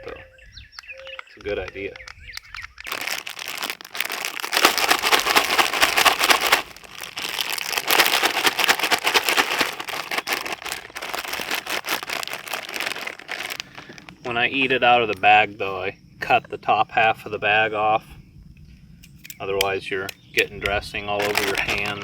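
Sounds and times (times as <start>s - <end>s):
plastic bag crinkling: 2.8s - 14.3s, 21.1s - 22.0s.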